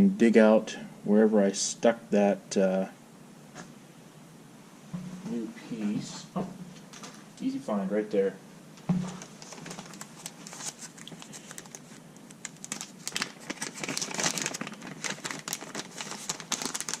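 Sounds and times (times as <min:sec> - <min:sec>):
plastic bag crinkling: 0:08.9 - 0:17.0.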